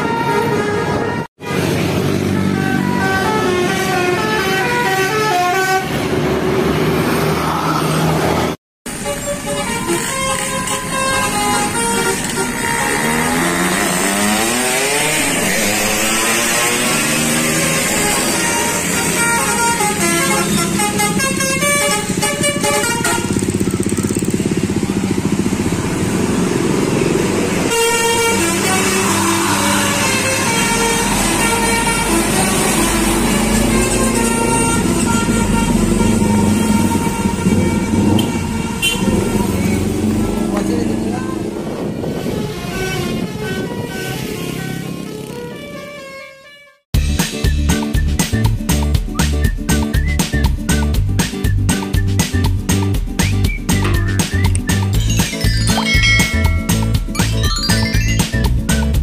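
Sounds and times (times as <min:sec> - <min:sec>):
multi-tone horn tune: 0:00.0 - 0:06.2, 0:08.9 - 0:24.4, 0:27.6 - 0:40.0, 0:42.1 - 0:46.8, 0:55.0 - 0:58.2.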